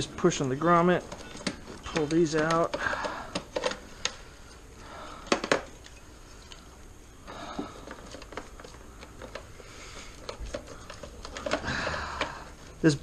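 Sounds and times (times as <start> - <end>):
soft rustling of wiring: 0.0 - 4.8, 5.4 - 13.0
plastic connectors clicking: 0.9 - 4.2, 10.1 - 12.6.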